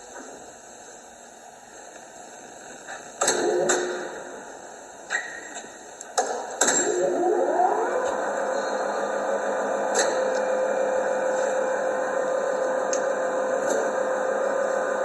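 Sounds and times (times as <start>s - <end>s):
lathe running with whine: 6.8s - 15.0s.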